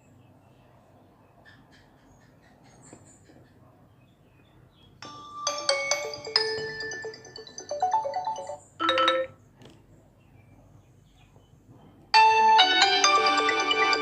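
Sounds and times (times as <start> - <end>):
bell-like ringtone melody: 5.0 - 9.4, 12.2 - 14.0
bright ringtone melody: 5.0 - 9.4, 12.2 - 14.0.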